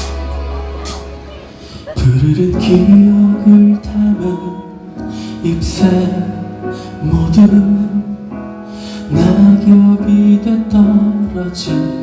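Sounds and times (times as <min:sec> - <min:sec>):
instrumental accompaniment: 0:00.0 - 0:07.1
man singing a slow ballad: 0:01.9 - 0:12.0.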